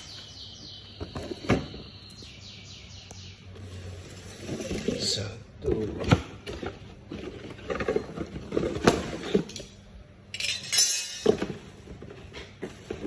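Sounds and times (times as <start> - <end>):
small metallic clinks: 10.3 - 11.2.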